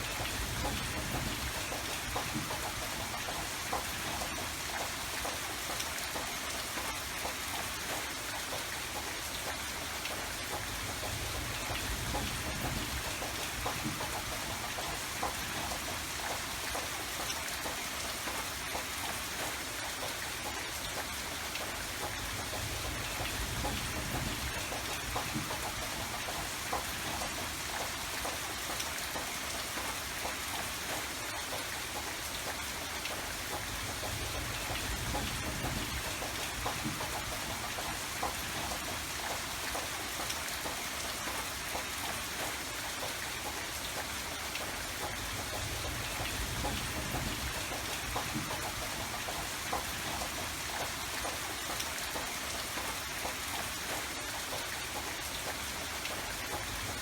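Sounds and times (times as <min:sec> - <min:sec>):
rain drops pattering: 0:00.0 - 0:57.0.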